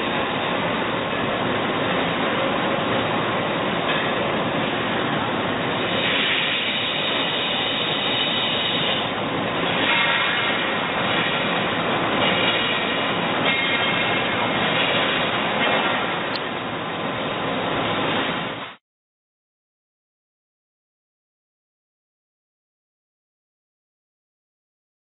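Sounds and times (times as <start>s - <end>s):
high machine whine: 0.0s - 18.8s
lathe running with hiss: 0.0s - 18.8s.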